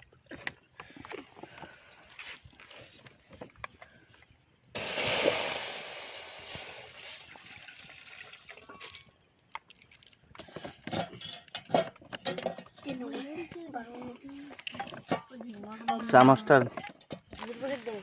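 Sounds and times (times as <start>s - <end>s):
liquid hissing in hot pot: 4.8s - 7.4s.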